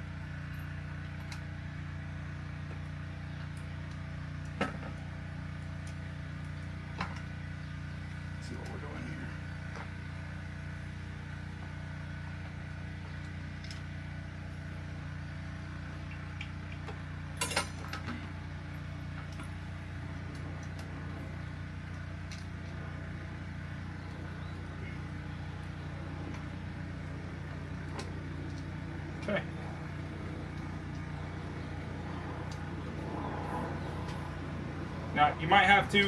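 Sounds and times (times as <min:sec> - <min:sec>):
steady low hum: 0:00.0 - 0:36.0.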